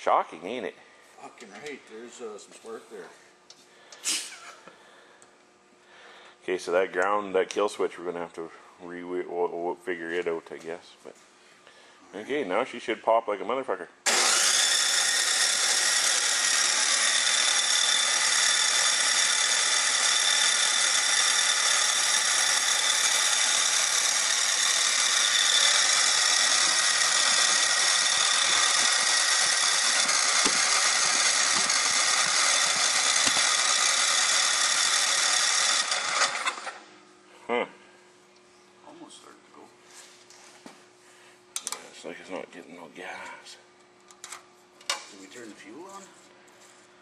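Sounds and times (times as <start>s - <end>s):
engine cranked by electric starter: 14.0s - 36.9s.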